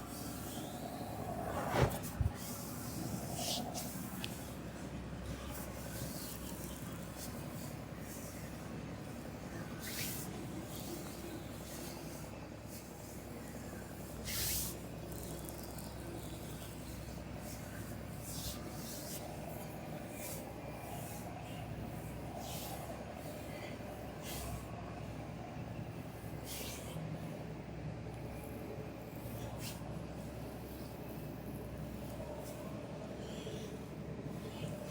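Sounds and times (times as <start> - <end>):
low background hum: 0.0 - 34.9
massage hissing swishes: 0.2 - 4.0.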